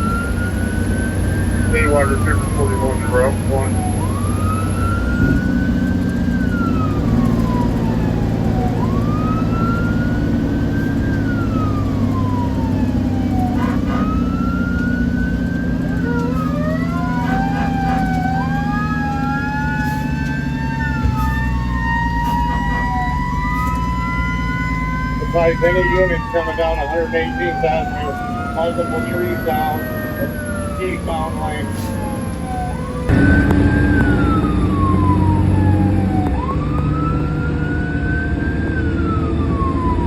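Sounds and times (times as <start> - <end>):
fire engine siren wailing: 0.0 - 40.0
truck engine drone: 0.0 - 40.0
second siren tone winding up: 16.0 - 38.9.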